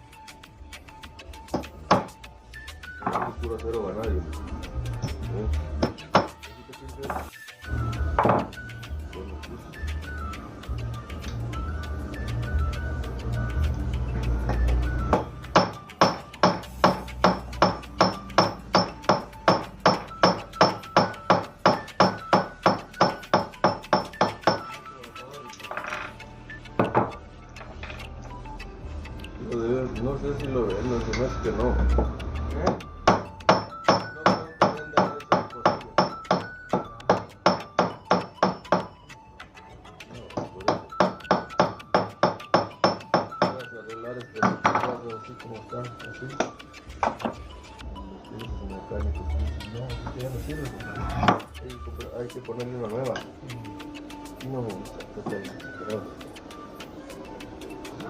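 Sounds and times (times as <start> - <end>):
hammer striking metal: 15.1 - 24.7, 32.6 - 38.9, 40.4 - 43.6.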